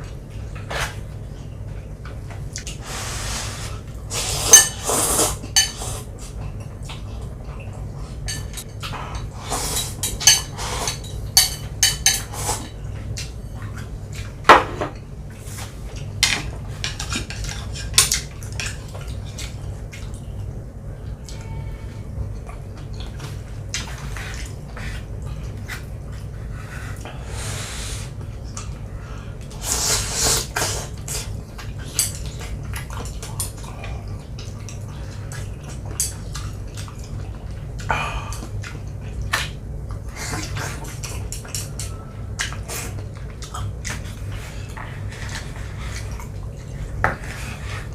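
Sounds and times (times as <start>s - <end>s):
slurping noodles: 2.8s - 6.1s, 29.6s - 31.3s
utensils clinking on bowl: 9.8s - 12.4s.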